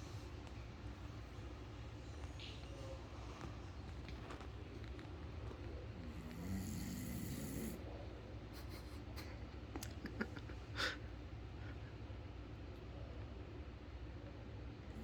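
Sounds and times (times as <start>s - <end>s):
person snoring: 6.0s - 7.8s.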